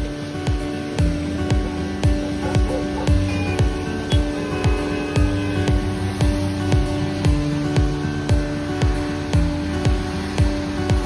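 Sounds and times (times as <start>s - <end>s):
kick drum beat: 0.0s - 11.0s
held tone: 2.2s - 7.0s.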